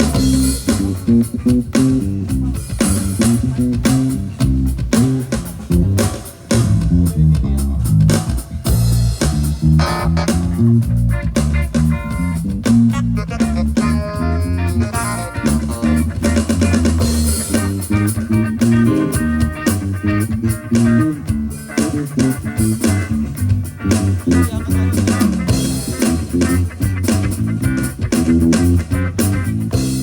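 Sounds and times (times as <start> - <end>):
plucked guitar: 0.0 - 8.3, 9.2 - 30.0
bass guitar: 0.0 - 30.0
drum kit beat: 0.0 - 30.0.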